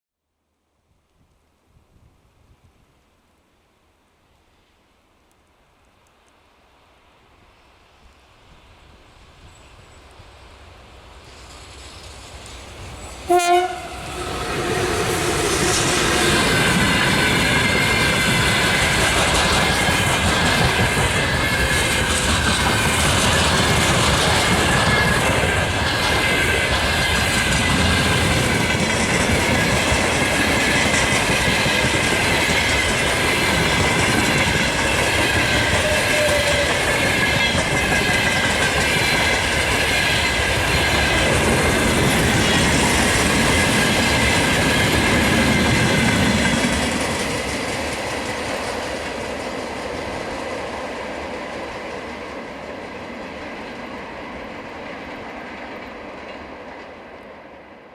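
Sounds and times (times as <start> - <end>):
wheels ringing on rails: 11.3 - 56.9
train wheels clattering: 11.3 - 57.1.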